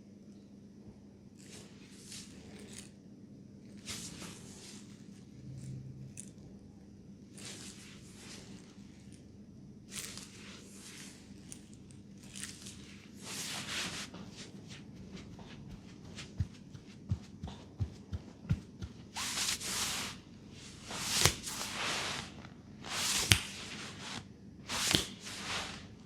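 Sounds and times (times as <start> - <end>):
hands rubbing over hair: 3.8 - 5.2, 12.4 - 26.0.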